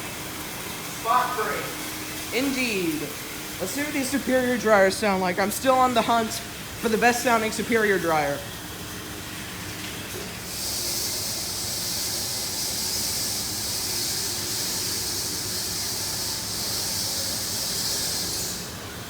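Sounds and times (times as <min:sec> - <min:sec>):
car wash dryer blowing air: 0:00.0 - 0:19.0.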